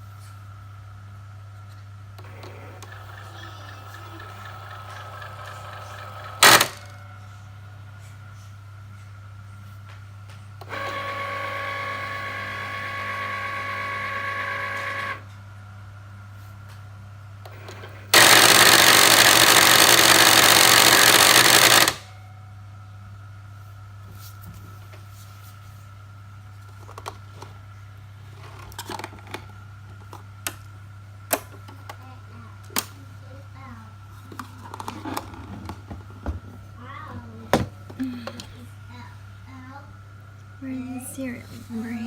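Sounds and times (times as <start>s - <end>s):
low steady hum: 0.0s - 12.0s
cutting machine motor whirring: 2.2s - 7.3s, 10.6s - 15.3s, 17.5s - 22.1s.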